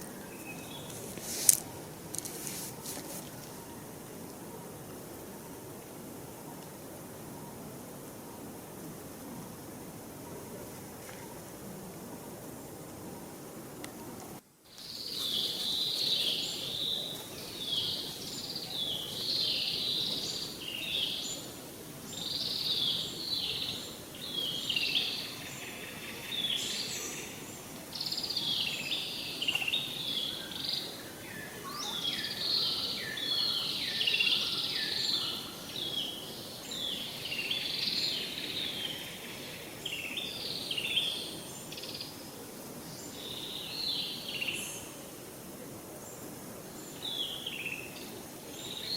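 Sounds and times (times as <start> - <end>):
birds chirping: 0.0 - 8.6, 13.1 - 42.2
low background hiss: 0.0 - 48.9.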